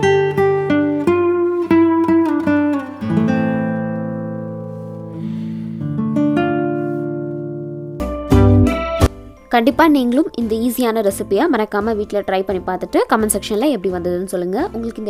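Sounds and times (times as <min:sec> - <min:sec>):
acoustic guitar music: 0:00.0 - 0:09.4.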